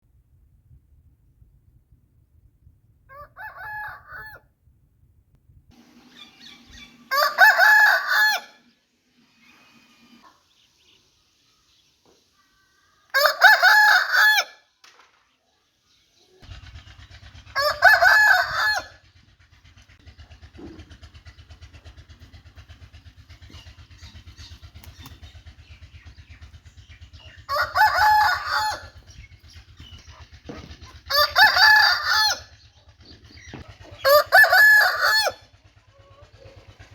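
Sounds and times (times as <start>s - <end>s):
roosters crowing: 3.1s - 4.4s, 5.8s - 8.7s, 13.1s - 14.7s, 17.2s - 19.1s, 21.1s - 36.9s
steady low hum: 18.4s - 36.9s.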